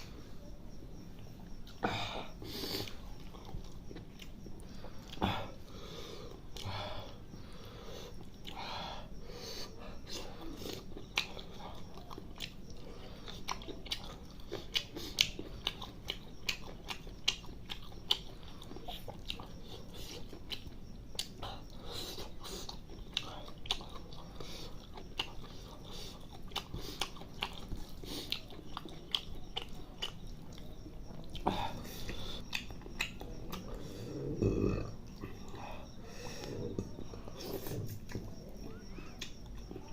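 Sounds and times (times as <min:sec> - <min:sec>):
person chewing food: 0:01.0 - 0:39.9
mouth clicks and smacks: 0:25.0 - 0:33.7.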